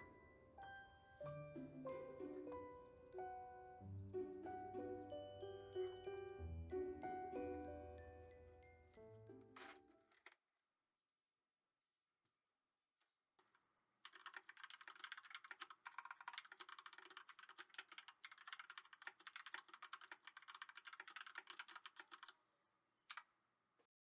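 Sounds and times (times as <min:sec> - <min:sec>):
typing on mechanical keyboard: 0:14.0 - 0:22.4, 0:23.1 - 0:23.3.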